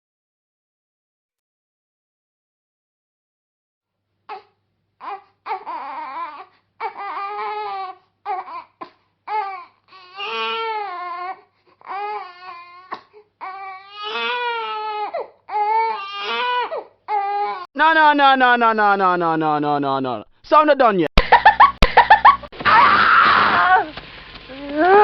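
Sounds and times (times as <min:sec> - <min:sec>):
young child crying: 0:24.5 - 0:25.0.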